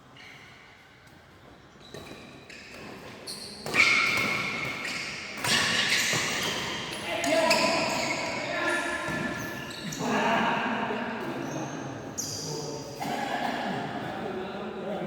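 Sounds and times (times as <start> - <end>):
indoor badminton activity: 0.1 - 15.0.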